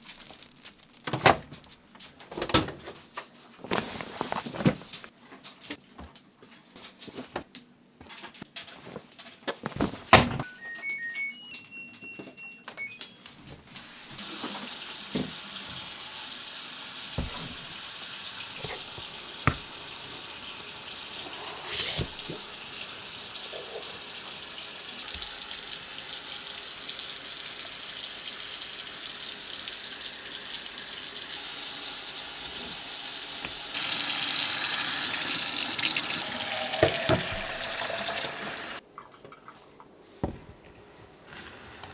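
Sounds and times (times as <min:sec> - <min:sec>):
short high tones: 0:10.4 - 0:13.2
tap running into sink: 0:14.2 - 0:16.4, 0:17.0 - 0:20.6, 0:33.4 - 0:38.8.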